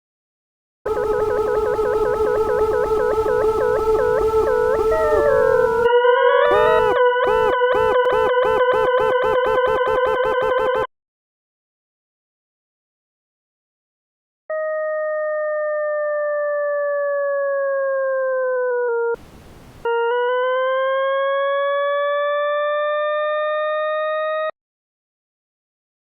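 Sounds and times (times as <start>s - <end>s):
computer-generated tone gliding in pitch: 0.9s - 10.9s
soft hiss: 19.2s - 19.9s.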